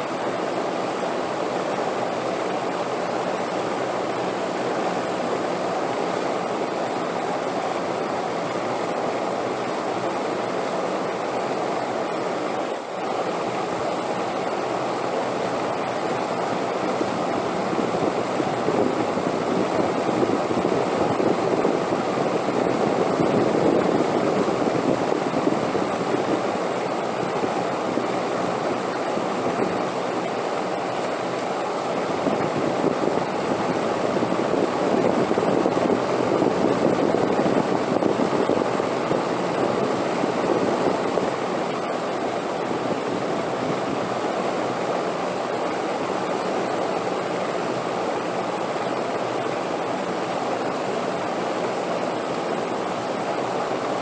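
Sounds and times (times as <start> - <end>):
steady wind rushing: 16.4 - 46.2.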